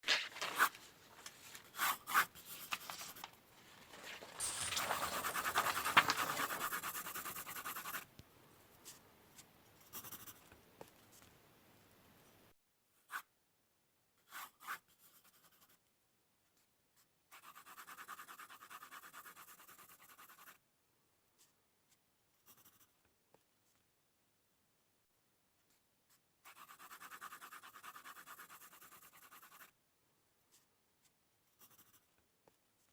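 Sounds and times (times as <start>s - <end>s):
drawing tool scratching on paper: 1.7s - 3.2s, 4.4s - 8.1s, 14.2s - 15.8s, 17.3s - 20.6s, 21.4s - 23.0s, 25.6s - 29.8s, 30.5s - 32.9s.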